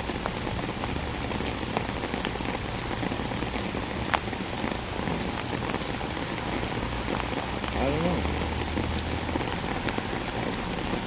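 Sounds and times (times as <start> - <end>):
raindrops ticking: 0.0 - 11.0
steady rain hiss: 0.0 - 11.0.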